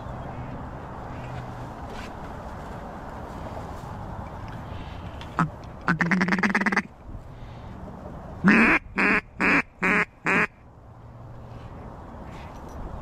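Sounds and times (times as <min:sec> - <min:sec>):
duck call quacks: 0:05.4 - 0:06.9, 0:08.4 - 0:10.5.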